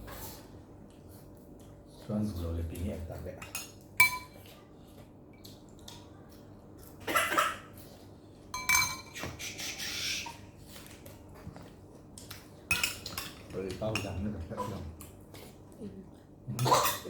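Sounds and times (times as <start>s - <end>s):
cutlery clinking against dishes: 3.3s - 4.6s, 8.5s - 9.4s, 12.2s - 15.1s, 16.6s - 17.0s.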